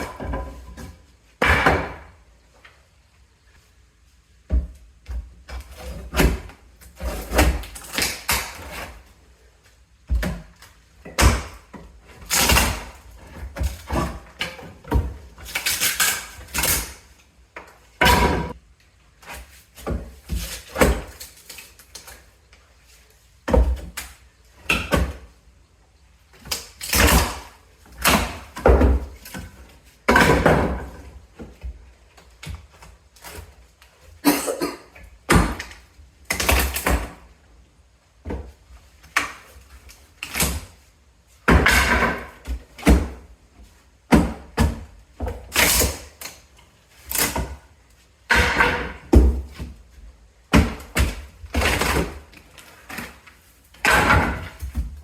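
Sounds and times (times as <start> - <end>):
floorboards being torn up: 4.5 - 9.1, 10.1 - 17.2, 19.2 - 22.3, 26.4 - 34.2, 35.2 - 37.3, 38.3 - 43.3, 44.1 - 55.0.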